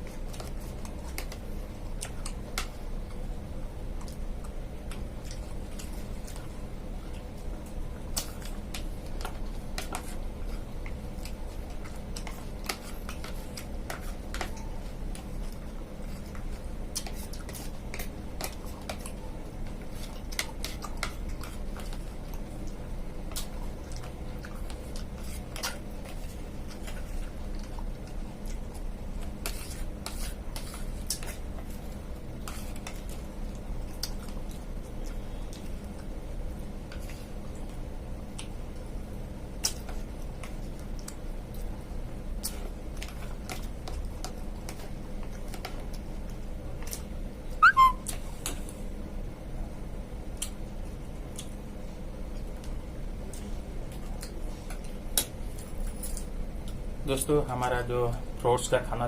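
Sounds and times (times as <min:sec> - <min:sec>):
steady low hum: 0:00.0 - 0:59.0.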